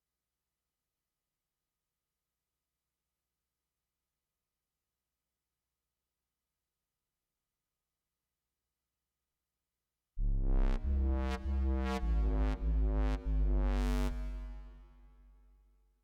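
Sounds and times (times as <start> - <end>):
deep synth bass phrase: 10.2 - 15.6.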